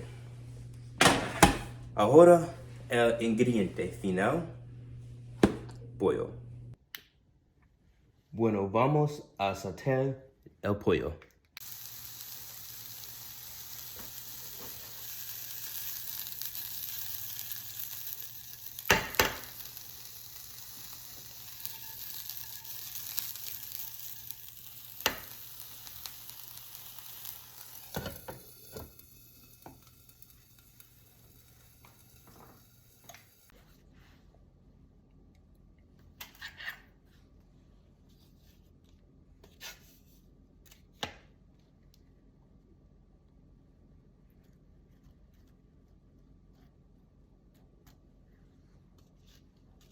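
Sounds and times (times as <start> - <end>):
chicken sizzling in a frying pan: 11.6 - 33.5.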